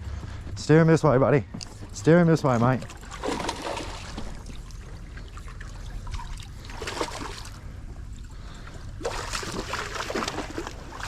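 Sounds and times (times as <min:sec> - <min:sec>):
low rumble: 0:00.0 - 0:09.0
water sloshing and trickling: 0:02.4 - 0:11.0.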